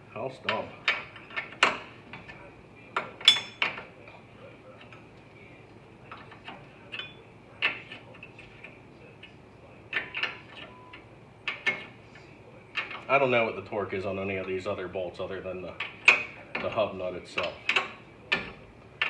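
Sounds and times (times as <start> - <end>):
metal tools clinking: 3.2 - 3.8.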